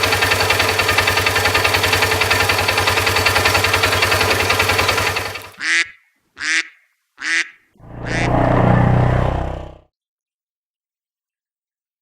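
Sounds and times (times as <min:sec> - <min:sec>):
engine idling: 0:00.0 - 0:05.6.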